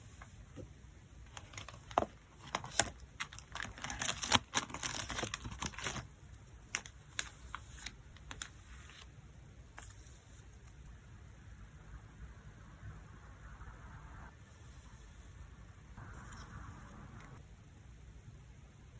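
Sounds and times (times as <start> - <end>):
plastic crinkling and rustling: 1.3 - 9.1.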